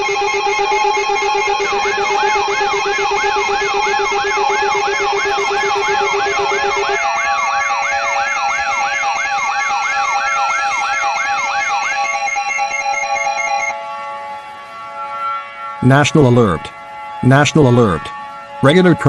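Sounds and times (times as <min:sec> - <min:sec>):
low pulsing buzz: 0:00.0 - 0:07.9
electronic alarm siren wail: 0:00.0 - 0:19.0
steady electronic tones: 0:00.0 - 0:19.0.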